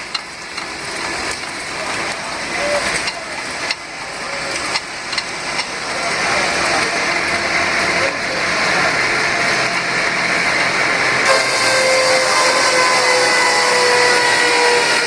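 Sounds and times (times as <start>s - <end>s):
dense hissing of sawmill: 5.8s - 15.0s.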